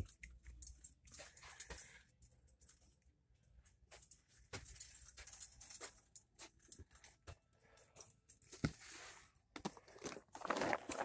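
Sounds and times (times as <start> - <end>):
packaging rustling and crinkling: 8.5 - 11.0.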